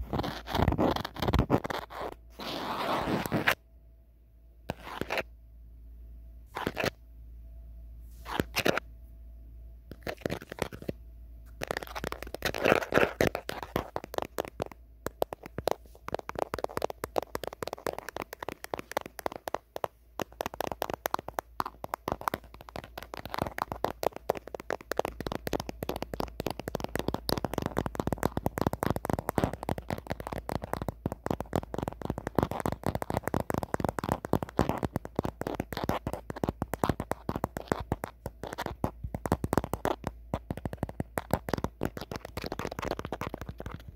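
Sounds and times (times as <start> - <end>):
fingernails tapping on phone: 11.6 - 43.9.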